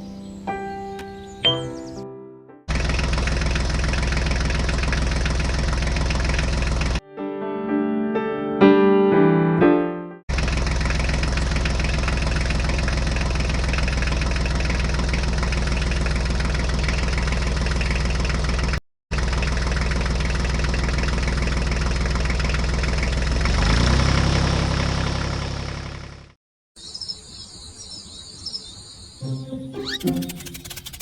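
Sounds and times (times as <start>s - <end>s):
tractor engine idling and revving: 2.7s - 7.0s, 10.3s - 26.4s, 29.8s - 31.0s.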